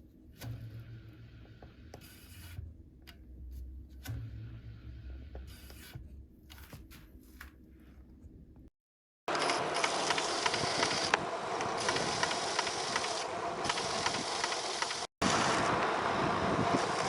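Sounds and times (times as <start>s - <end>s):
wind on microphone: 10.5s - 14.5s, 15.2s - 17.0s
wind buffeting microphone: 15.2s - 17.0s.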